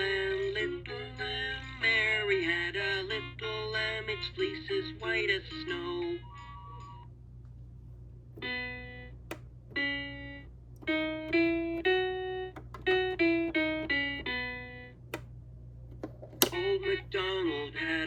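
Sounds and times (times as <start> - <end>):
electronic toy tune: 5.7 - 7.1, 8.4 - 15.0
sharp clicks: 9.2 - 9.8, 10.7 - 14.4, 15.0 - 16.7.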